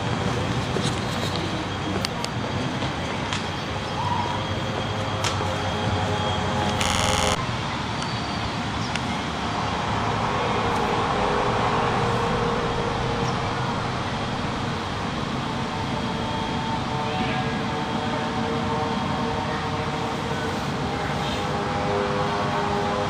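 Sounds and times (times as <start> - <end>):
outdoor background noise: 0.0 - 23.0
steady rumbling drone: 0.0 - 23.0
short buzzy blare: 6.8 - 7.4.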